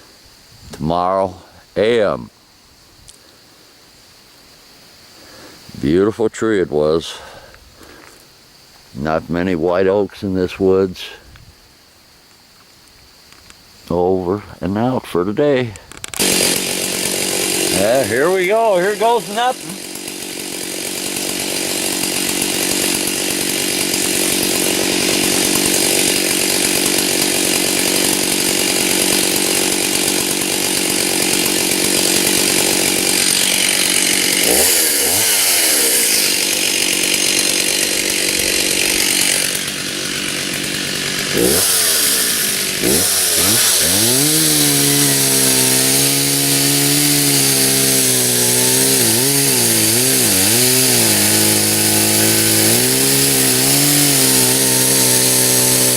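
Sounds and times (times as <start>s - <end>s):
chainsaw cutting wood: 16.0s - 55.9s.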